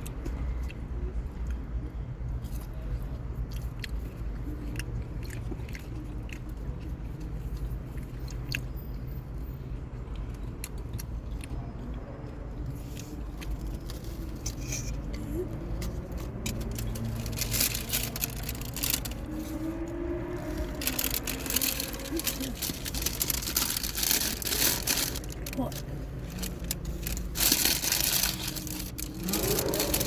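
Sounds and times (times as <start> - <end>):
chewing and biting food: 0.0 - 30.0
steady low rumble: 13.6 - 30.0.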